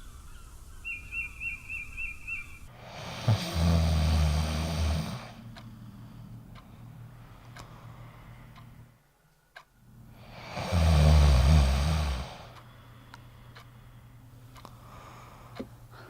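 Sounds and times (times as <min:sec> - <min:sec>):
quiet breath out: 0:02.7 - 0:09.2, 0:10.1 - 0:16.0
person snoring loudly: 0:02.8 - 0:05.4, 0:10.2 - 0:12.5
faint ticks: 0:06.5 - 0:08.8, 0:12.4 - 0:13.8, 0:14.5 - 0:14.9, 0:15.5 - 0:15.8.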